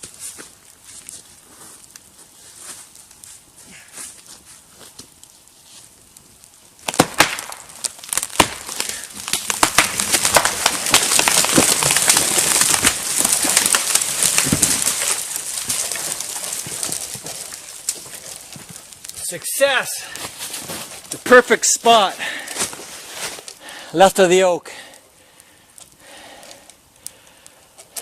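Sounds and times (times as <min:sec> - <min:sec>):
branches crashing and snapping: 0:00.0 - 0:19.4, 0:20.0 - 0:23.7
tree trunk cracking: 0:02.8 - 0:23.8.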